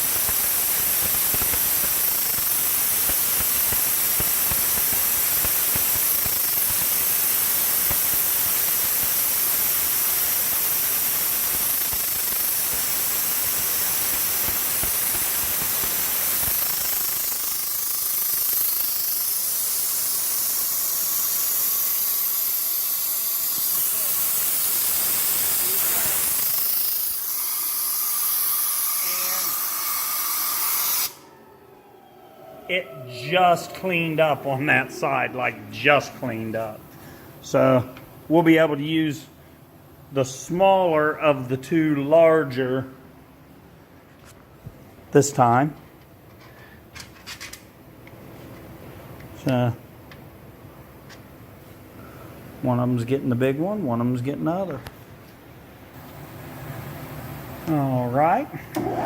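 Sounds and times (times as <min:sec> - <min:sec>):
machine tool boring metal: 0:00.0 - 0:31.1.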